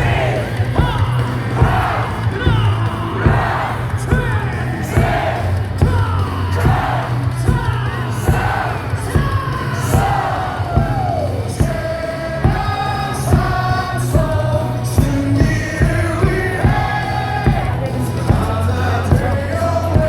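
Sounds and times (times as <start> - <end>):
crowd yells and whoops: 0.0 - 13.9
crowd singing a cheer song: 0.0 - 20.0
music from stadium speakers: 0.0 - 20.0.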